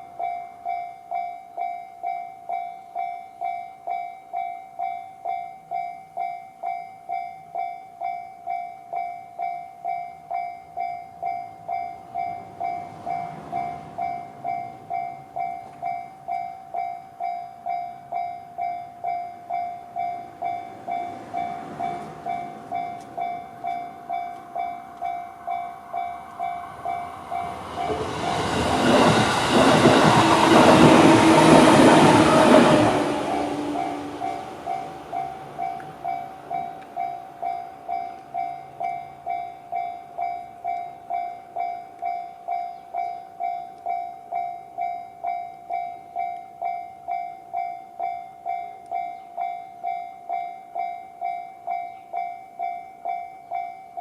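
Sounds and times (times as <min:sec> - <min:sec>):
train rumble and wheel clatter: 0:10.8 - 0:50.5.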